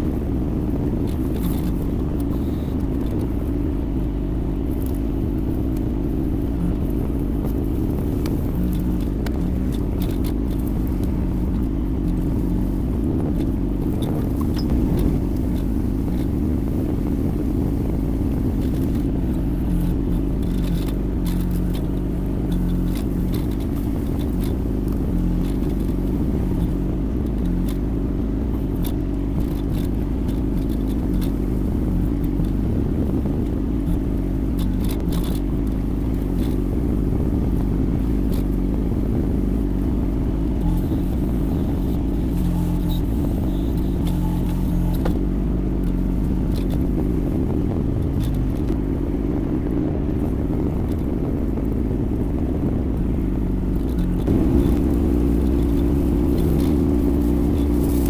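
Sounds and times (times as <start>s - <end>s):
light clicks and scrapes: 1.0s - 3.6s, 4.7s - 27.8s, 28.6s - 39.3s, 40.6s - 45.2s, 45.8s - 47.1s, 47.7s - 48.8s, 53.7s - 58.0s
excavator diesel engine running: 53.4s - 58.0s.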